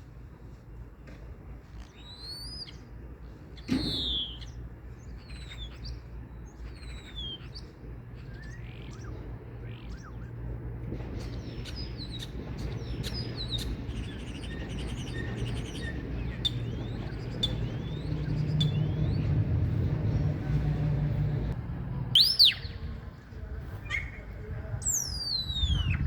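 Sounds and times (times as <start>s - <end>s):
steady low rumble: 0.0s - 26.0s
loud rising and falling whistle: 22.1s - 22.8s.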